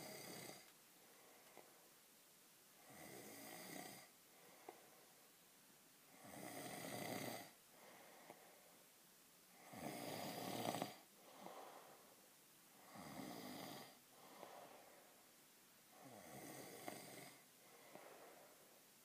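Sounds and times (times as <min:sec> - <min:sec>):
man snoring: 0:00.0 - 0:00.7, 0:02.8 - 0:04.1, 0:06.1 - 0:07.6, 0:09.5 - 0:11.6, 0:12.8 - 0:14.4, 0:15.9 - 0:17.5
soft breath: 0:00.0 - 0:02.0, 0:02.8 - 0:05.4, 0:07.4 - 0:19.0.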